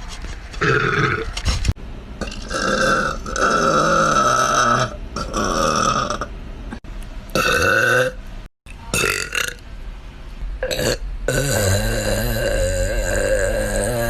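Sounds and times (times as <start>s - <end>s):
woman belching loudly: 2.2s - 6.3s, 7.4s - 8.2s.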